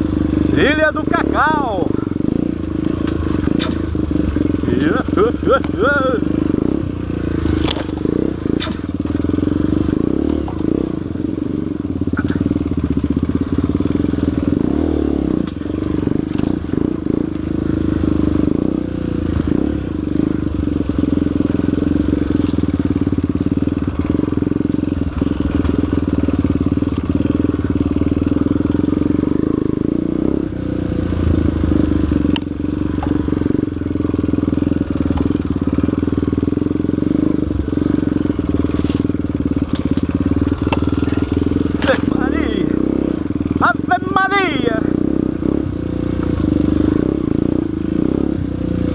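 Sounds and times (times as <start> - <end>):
motorcycle engine running: 0.0 - 48.9
knocks and rattles: 3.6 - 4.3, 8.6 - 9.2.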